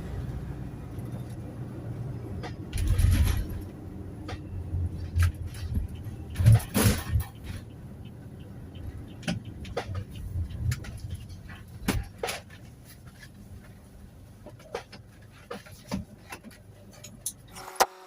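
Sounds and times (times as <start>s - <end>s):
van engine and road rumble: 0.0s - 18.0s
sharp knocks and clicks: 2.4s - 12.7s.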